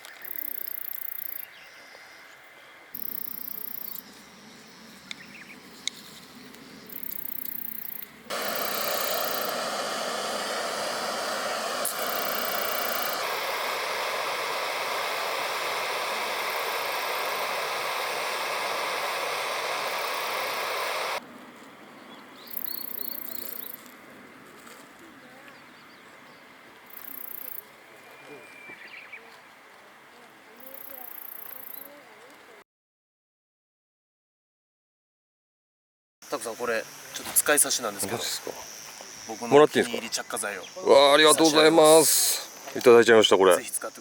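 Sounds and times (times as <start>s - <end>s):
outdoor background: 0.0s - 32.6s, 36.2s - 44.0s
steady hiss: 2.9s - 21.2s, 36.2s - 44.0s.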